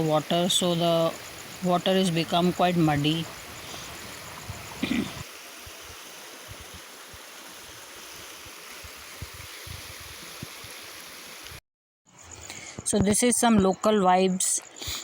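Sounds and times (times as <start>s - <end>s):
mountain stream rushing: 0.0s - 11.6s.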